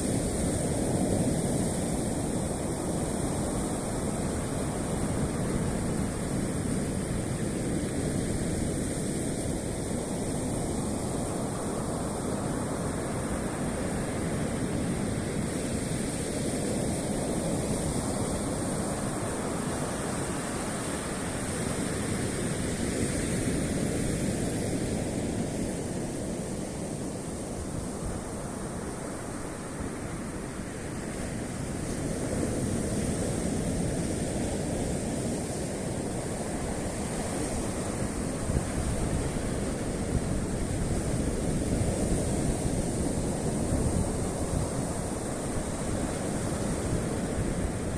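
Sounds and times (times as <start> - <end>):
surf washing onto shore: 0.0 - 47.9.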